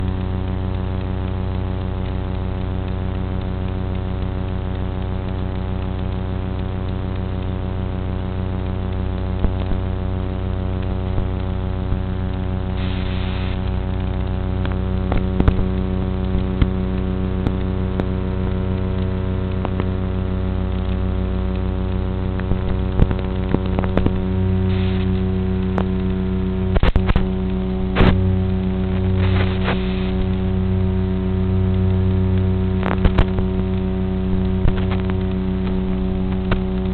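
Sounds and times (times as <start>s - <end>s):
short clicks and crackles: 0.0s - 36.9s
steady electrical hum: 0.0s - 36.9s.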